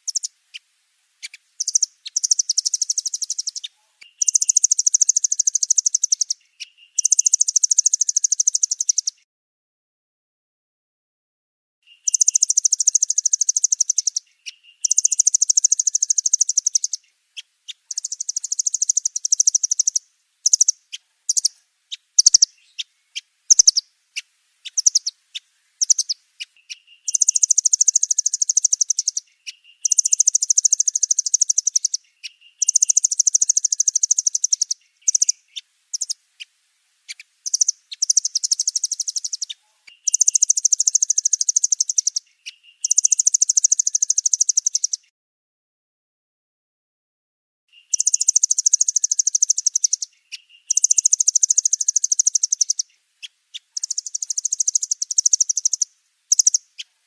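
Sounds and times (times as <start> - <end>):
nuthatch trilling: 0.0 - 0.3, 1.2 - 9.1, 11.9 - 17.0, 17.7 - 23.8, 24.7 - 36.2, 37.1 - 45.0, 47.7 - 52.9, 53.5 - 56.9
sharp bird chips: 1.2 - 9.2, 11.9 - 17.0, 17.7 - 21.5, 22.2 - 22.9, 23.5 - 23.8, 24.7 - 25.1, 25.8 - 36.2, 37.1 - 45.1, 47.7 - 52.8, 53.6 - 56.6.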